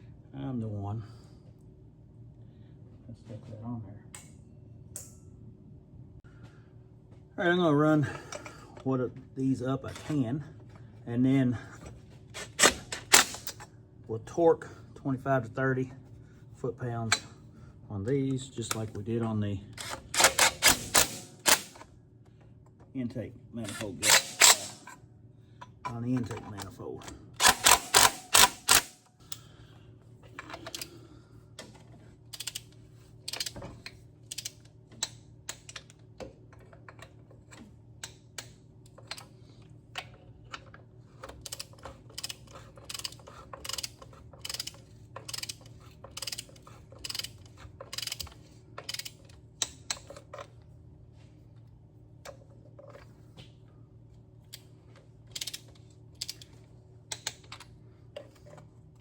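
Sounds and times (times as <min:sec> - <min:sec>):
faint steady hum: 0:00.0 - 0:59.0
hand ratchet clicking: 0:19.8 - 0:21.8, 0:24.0 - 0:24.9, 0:27.4 - 0:29.4, 0:32.3 - 0:32.7, 0:33.3 - 0:36.0, 0:41.2 - 0:50.2, 0:55.3 - 0:56.5.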